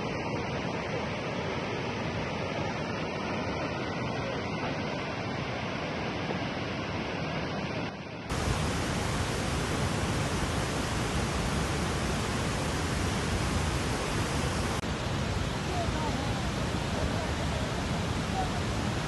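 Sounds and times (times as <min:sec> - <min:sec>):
rushing water: 0:08.3 - 0:19.0.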